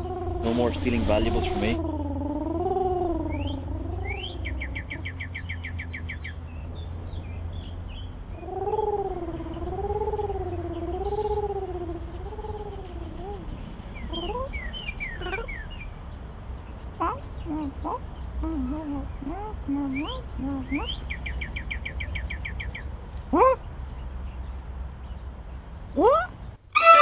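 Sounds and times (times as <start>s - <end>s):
wavering tone: 0.0s - 5.0s
steady low rumble: 0.0s - 26.0s
small birds chirping: 0.0s - 27.0s
bird trill: 2.7s - 6.4s, 8.3s - 16.0s.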